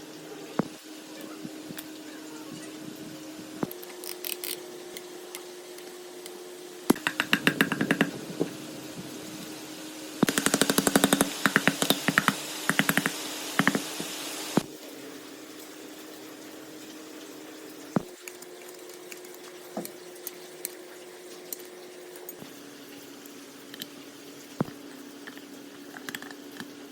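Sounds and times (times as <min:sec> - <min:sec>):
steady hum: 0:00.0 - 0:15.6
rapid sharp clicks: 0:10.2 - 0:14.1.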